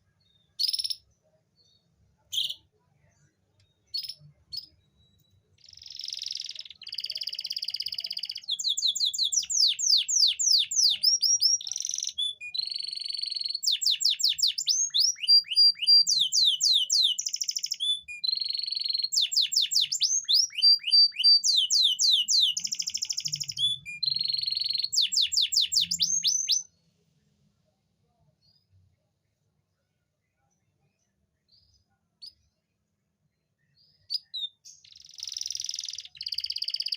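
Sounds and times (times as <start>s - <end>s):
canary singing: 0.4s - 2.7s, 3.9s - 26.7s, 33.7s - 36.9s.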